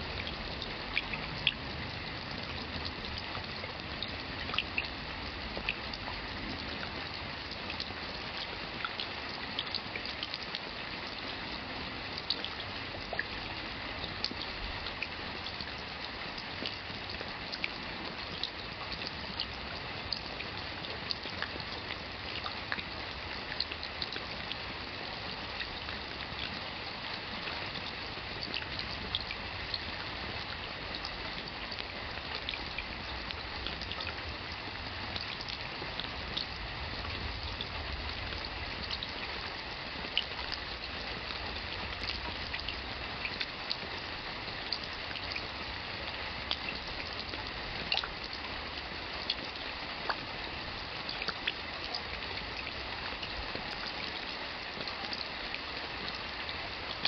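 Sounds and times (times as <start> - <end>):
steady rain with dripping drops: 0.0 - 57.0.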